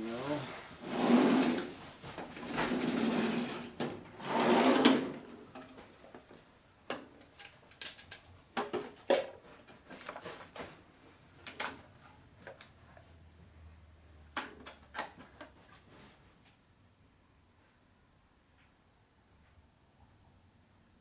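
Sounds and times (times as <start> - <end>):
tool drawers sliding with rattle: 0.3 - 5.8
small tools clicking and knocking: 6.9 - 9.4.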